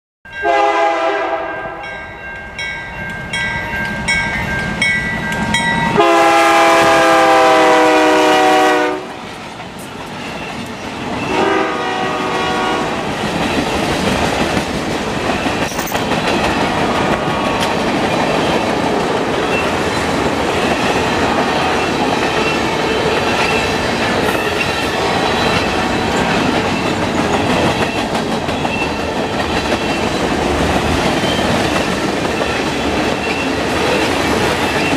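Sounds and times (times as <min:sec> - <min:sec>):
locomotive air horn blasts: 0:00.4 - 0:01.9, 0:06.0 - 0:09.2, 0:11.3 - 0:13.0
train wheels rumbling and clattering: 0:08.4 - 0:34.9.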